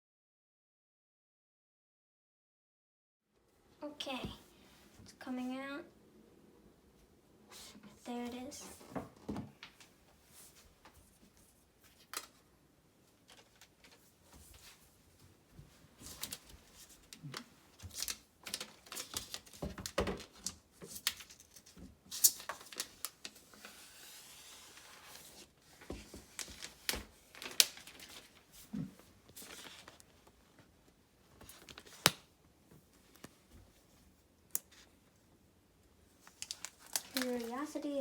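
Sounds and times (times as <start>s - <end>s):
paper and plastic wrapping crackling: 15.9s - 30.7s, 31.3s - 32.3s, 36.2s - 38.0s.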